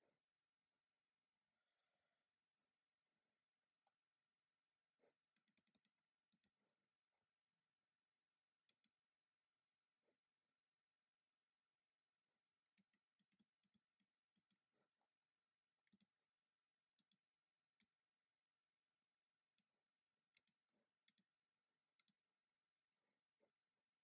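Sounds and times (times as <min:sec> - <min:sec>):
faint keyboard typing: 0:05.3 - 0:06.5, 0:08.6 - 0:09.0, 0:12.7 - 0:14.6, 0:16.9 - 0:17.2, 0:20.3 - 0:21.3, 0:22.0 - 0:22.2.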